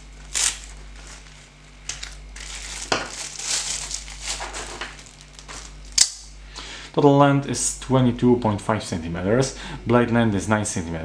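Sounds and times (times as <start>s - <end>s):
fabric sheath rustling: 0.0s - 6.0s.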